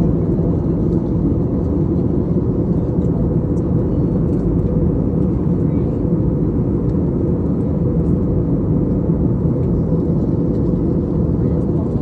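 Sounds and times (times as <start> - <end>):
aircraft drone: 0.0 - 12.0.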